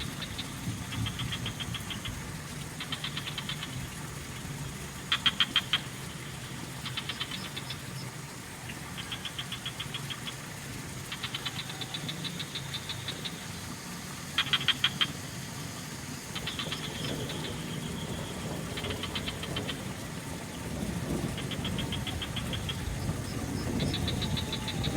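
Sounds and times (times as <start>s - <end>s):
frogs croaking: 0.0s - 24.9s
low steady rumble: 9.6s - 24.9s.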